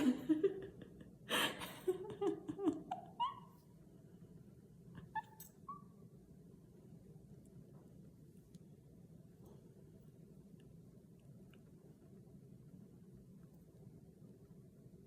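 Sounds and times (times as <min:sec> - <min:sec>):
woman laughing quietly: 0:00.0 - 0:03.8, 0:04.9 - 0:05.8.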